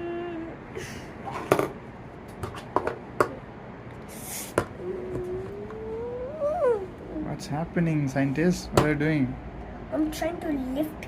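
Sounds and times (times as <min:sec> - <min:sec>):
short hisses: 0:04.1 - 0:04.6.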